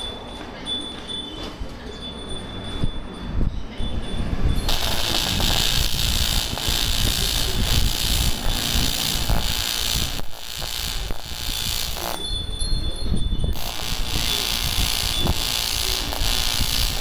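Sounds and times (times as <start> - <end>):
welding arc hissing: 4.6 - 12.6, 13.5 - 17.0.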